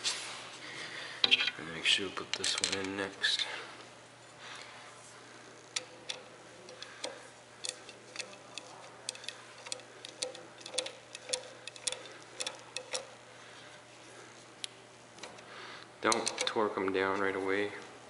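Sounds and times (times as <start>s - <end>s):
socket wrench ratchet clicking: 5.7s - 13.2s, 16.1s - 16.6s.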